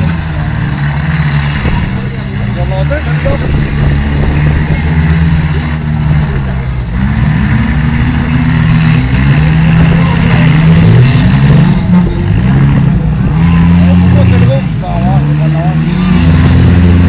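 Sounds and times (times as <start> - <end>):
car engines revving: 0.0 - 17.0.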